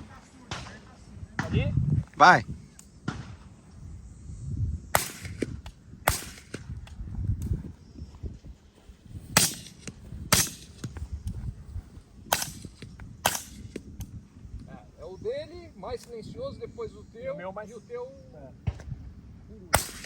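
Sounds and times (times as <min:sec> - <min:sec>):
suppressed rifle shots: 0:04.9 - 0:06.8, 0:09.3 - 0:10.9, 0:12.3 - 0:13.9, 0:19.8 - 0:20.0.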